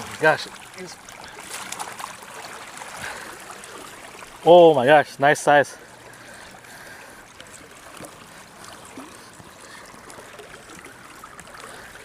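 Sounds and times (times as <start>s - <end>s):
river water trickling: 0.0s - 12.0s.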